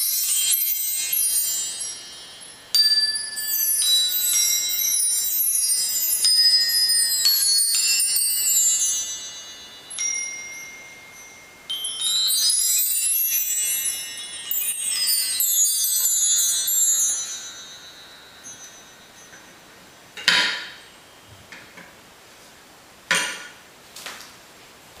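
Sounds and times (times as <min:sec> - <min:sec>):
bar chimes ringing: 0:00.0 - 0:21.3.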